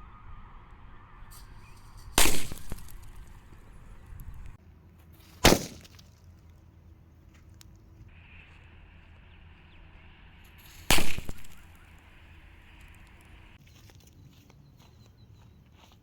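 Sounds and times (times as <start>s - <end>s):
firecrackers exploding: 1.6s - 4.6s, 5.4s - 5.8s, 10.6s - 12.0s.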